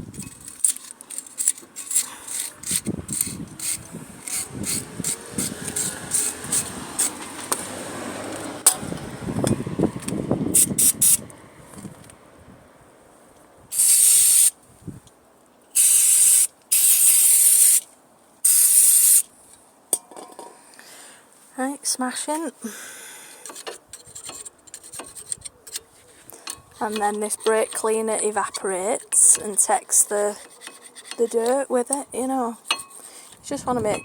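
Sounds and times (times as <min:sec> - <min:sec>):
brush scrubbing brakes: 0:00.2 - 0:08.5, 0:23.5 - 0:31.7.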